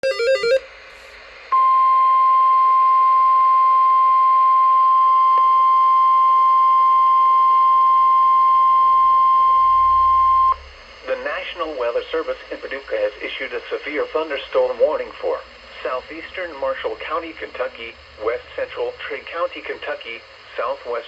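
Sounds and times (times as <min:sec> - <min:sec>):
loud steady alarm beep: 0:00.0 - 0:02.2.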